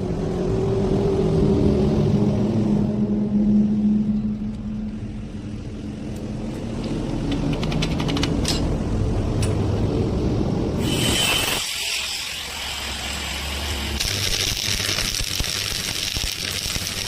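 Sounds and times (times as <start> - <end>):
arc welding rumble and hiss: 8.8 - 17.0.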